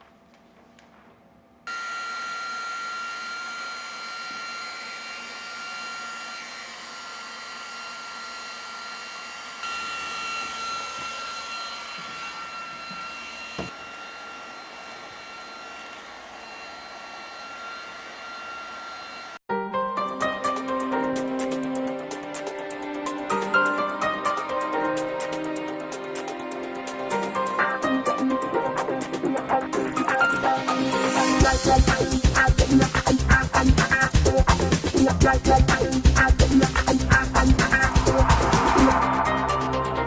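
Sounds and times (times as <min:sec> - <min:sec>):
hot-air welder blower whine: 0:01.7 - 0:19.4.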